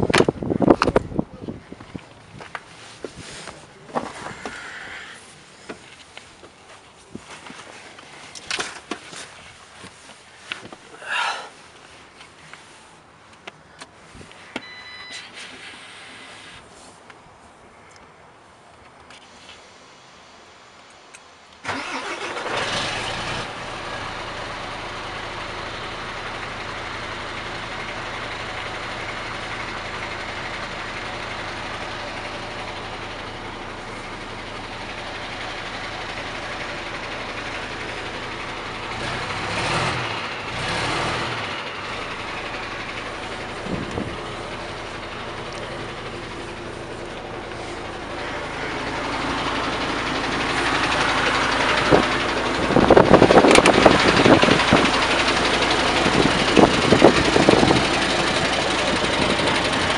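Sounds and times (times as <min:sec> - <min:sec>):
diesel truck engine starting and idling: 0:21.5 - 0:59.9.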